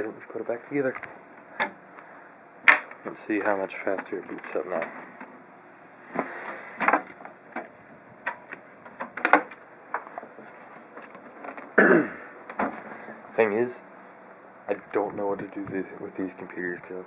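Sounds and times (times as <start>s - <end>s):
computer case clicks and knocks: 2.7s - 3.0s, 8.3s - 9.6s.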